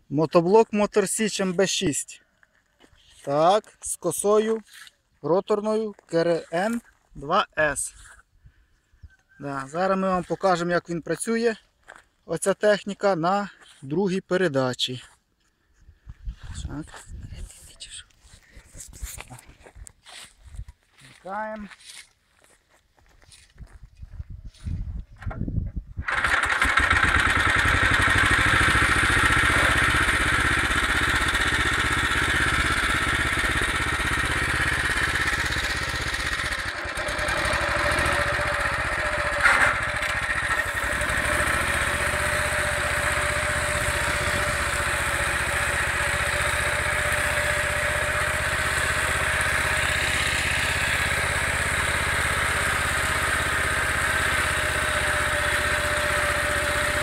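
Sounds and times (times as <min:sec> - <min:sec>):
mower drive whine: 0:26.0 - 0:57.0
tractor engine running: 0:26.0 - 0:57.0.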